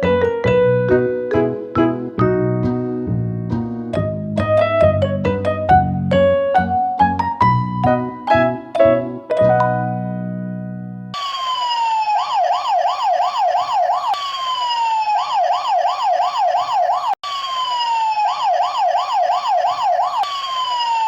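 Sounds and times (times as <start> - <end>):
piano chord: 0.0 - 11.1
electronic siren wailing: 11.2 - 21.0.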